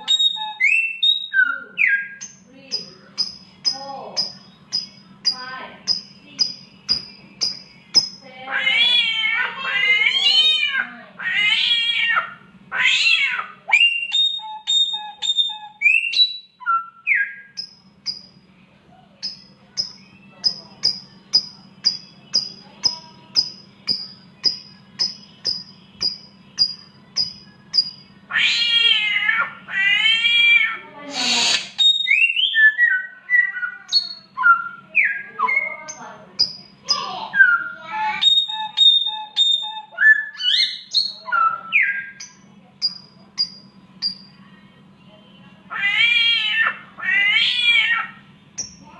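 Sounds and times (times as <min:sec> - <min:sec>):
bird whistling: 0:00.0 - 0:08.2, 0:13.7 - 0:18.4, 0:31.1 - 0:44.3
steady low hum: 0:00.0 - 0:47.1
bird making meow-like wails: 0:08.4 - 0:13.9, 0:28.3 - 0:31.7, 0:45.7 - 0:48.2.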